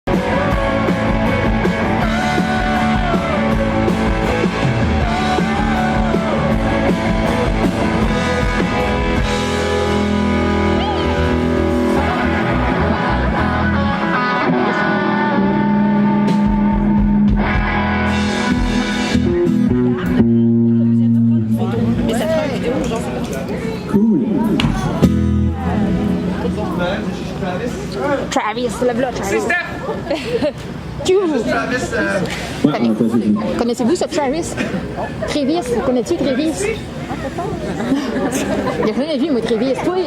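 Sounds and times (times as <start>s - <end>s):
rock band playing: 0.0s - 22.8s, 24.2s - 27.8s.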